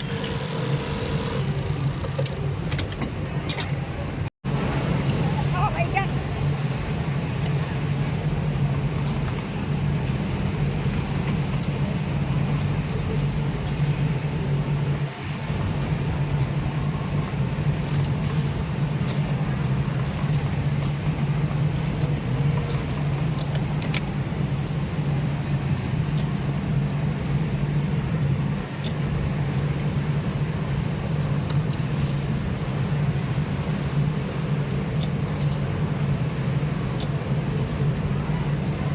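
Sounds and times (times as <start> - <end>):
sewing machines humming: 0.0 - 2.0.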